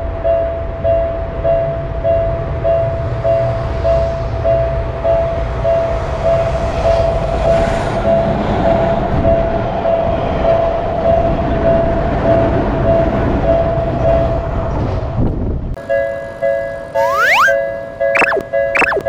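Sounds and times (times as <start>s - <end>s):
cartoon whistle sound effects: 17.0s - 17.6s, 18.2s - 19.0s.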